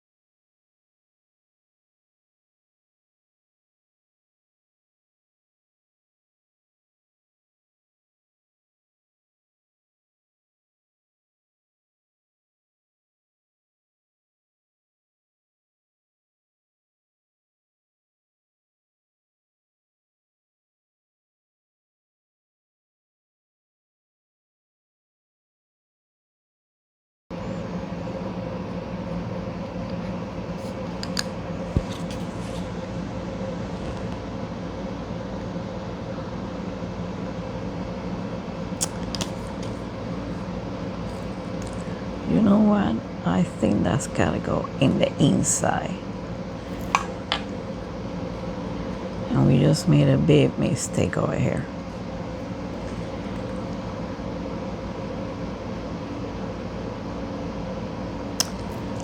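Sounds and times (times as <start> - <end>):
machine hum: 27.3 - 59.0.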